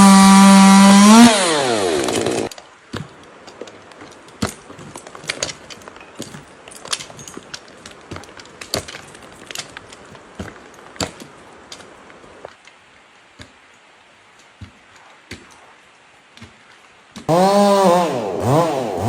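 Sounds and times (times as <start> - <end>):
wood knocking and snapping: 2.0 - 11.9, 14.4 - 15.6
rustling hiss: 2.4 - 17.4.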